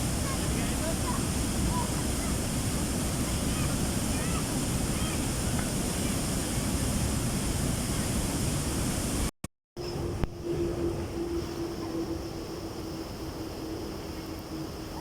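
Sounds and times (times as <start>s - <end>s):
waterfall roaring: 0.0s - 9.3s.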